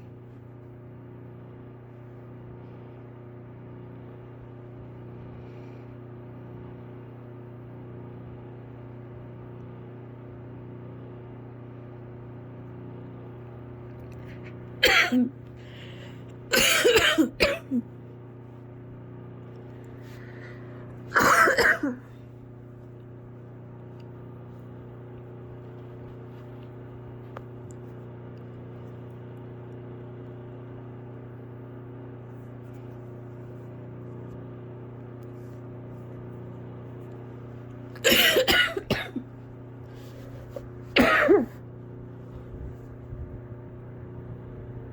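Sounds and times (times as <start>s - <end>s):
steady low hum: 0.0s - 44.9s
person coughing: 14.8s - 15.4s, 16.5s - 17.9s, 21.1s - 22.2s, 38.0s - 39.3s, 40.9s - 41.6s.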